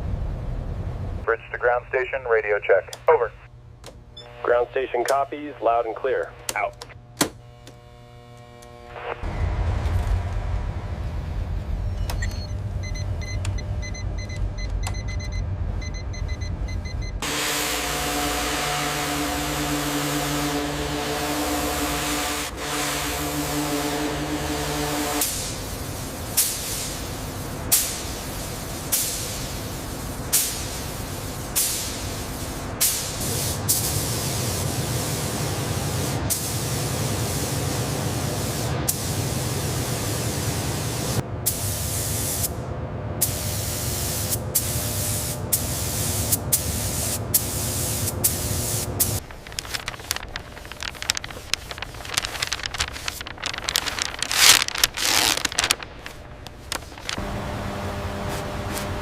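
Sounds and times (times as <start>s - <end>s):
low rumble: 0.0s - 1.3s, 9.1s - 28.8s, 49.1s - 57.4s
crackle: 8.0s - 12.6s, 49.0s - 57.2s
hissing spray bursts: 17.2s - 42.5s, 43.2s - 53.2s.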